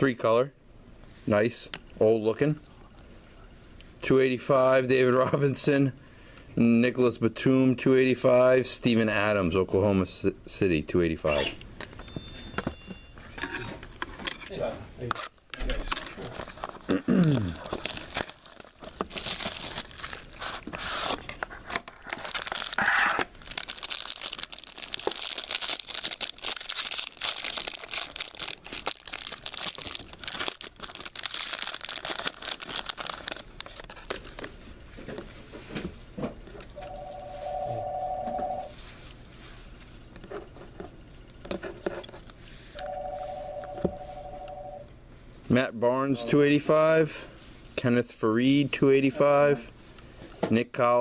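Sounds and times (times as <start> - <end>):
wrappers tearing and crinkling: 15.8 - 21.3, 22.0 - 34.4.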